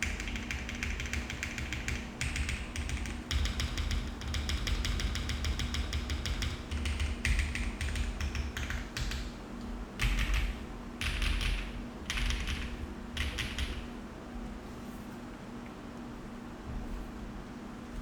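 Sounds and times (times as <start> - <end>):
mechanical keyboard typing: 0.0 - 9.3, 10.0 - 13.9.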